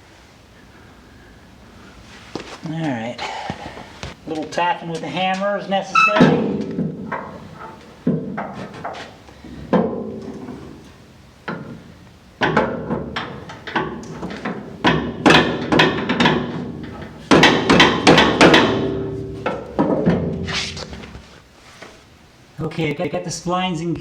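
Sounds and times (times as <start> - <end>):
hammer striking metal: 17.3 - 20.4.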